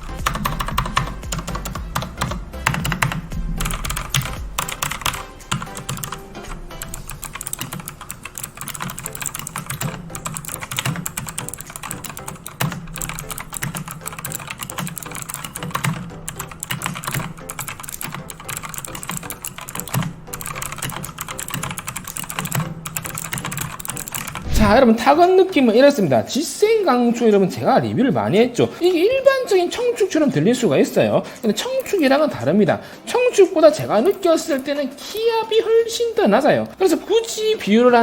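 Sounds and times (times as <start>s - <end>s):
fast keyboard typing: 0.0s - 24.8s.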